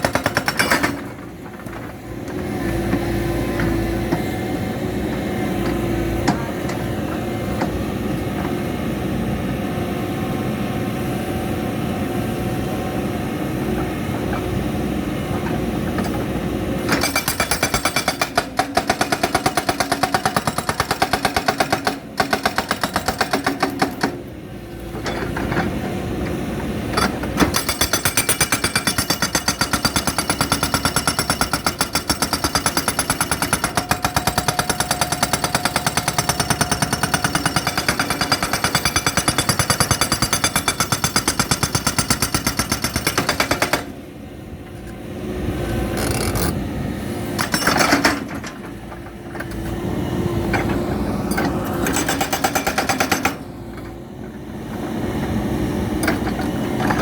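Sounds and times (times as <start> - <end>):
hydraulic rock breaker hammering: 0.0 - 7.8, 15.5 - 24.3, 26.6 - 44.0, 51.3 - 54.0
excavator engine and hydraulics: 0.0 - 57.0.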